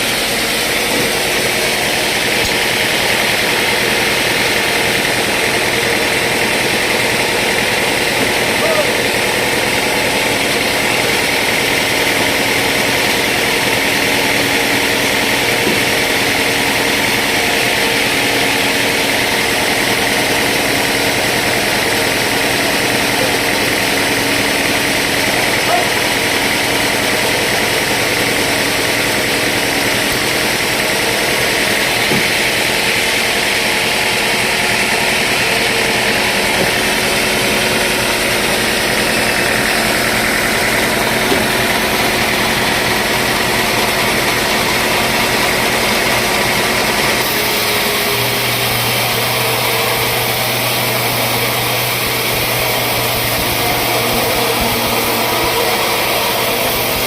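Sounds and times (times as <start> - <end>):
sawmill machinery running: 0.0 - 57.0.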